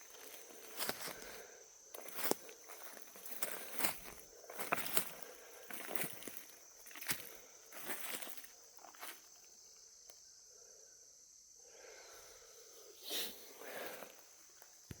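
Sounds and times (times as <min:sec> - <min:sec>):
footsteps through dry leaves: 0:00.0 - 0:09.3
high insect drone: 0:00.0 - 0:15.0.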